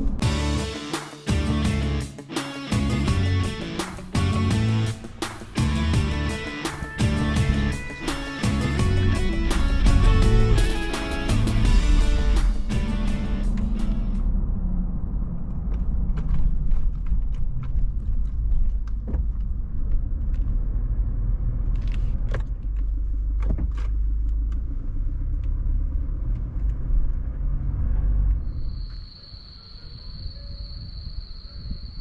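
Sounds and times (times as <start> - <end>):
car road rumble: 7.0 - 29.1.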